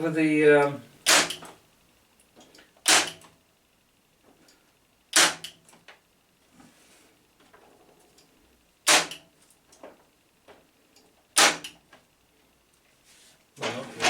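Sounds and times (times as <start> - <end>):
electric nailer firing: 1.0 - 1.5, 2.8 - 3.3, 5.1 - 5.6, 8.8 - 9.3, 11.4 - 11.8.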